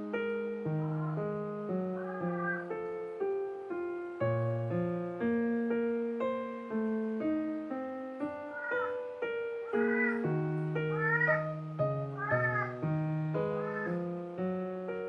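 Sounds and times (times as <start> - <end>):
slow piano music: 0.0 - 15.0
cat meowing faintly: 0.8 - 1.3, 1.9 - 2.7, 8.4 - 9.0, 9.6 - 11.6, 12.2 - 12.8, 13.6 - 14.0.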